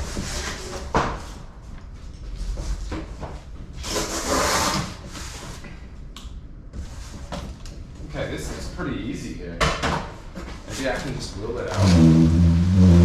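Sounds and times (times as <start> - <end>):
cardboard box rubbing and scraping: 11.7 - 13.0.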